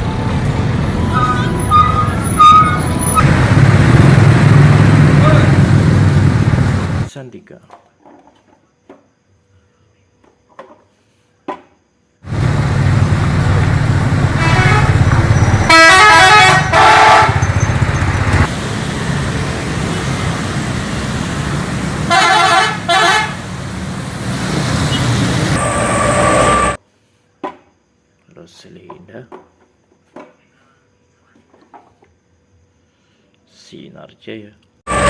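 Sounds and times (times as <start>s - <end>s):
engine and road noise: 0.0s - 7.1s, 12.2s - 26.8s
bus musical horn: 0.8s - 3.2s, 14.2s - 17.8s, 22.0s - 23.6s.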